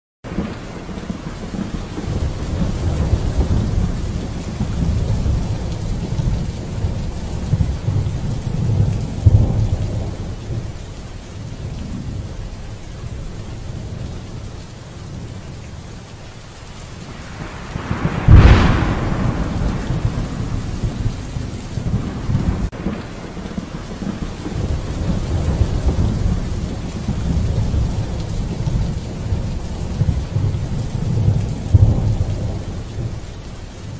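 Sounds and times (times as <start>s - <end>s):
rain falling: 0.2s - 33.9s
sharp thunderclap: 0.3s - 10.6s, 16.9s - 33.2s
thunder rumbling: 0.3s - 10.8s, 16.3s - 33.2s.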